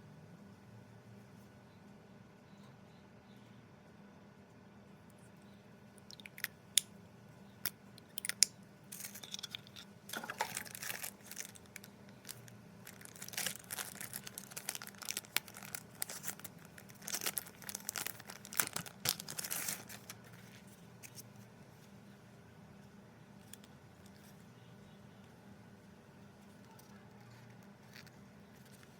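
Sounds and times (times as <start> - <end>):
wrapping tearing and crinkling: 8.2 - 21.3.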